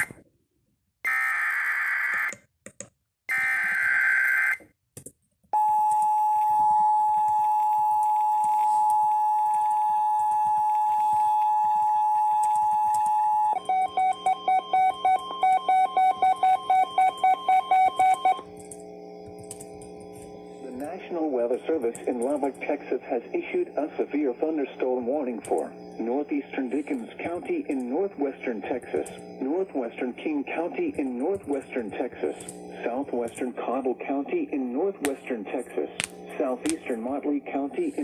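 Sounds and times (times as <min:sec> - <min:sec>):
rapid pulsing multi-tone beeps: 0:12.7 - 0:18.5.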